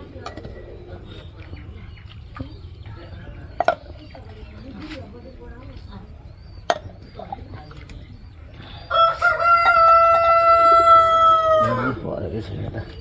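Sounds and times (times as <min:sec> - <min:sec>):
rooster crowing: 0:08.8 - 0:12.0.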